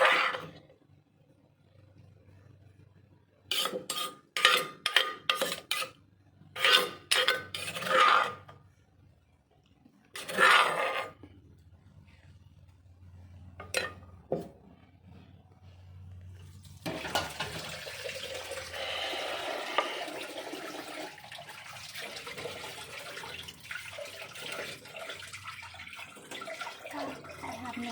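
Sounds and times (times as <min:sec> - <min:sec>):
water running from a tap: 0:16.5 - 0:27.9.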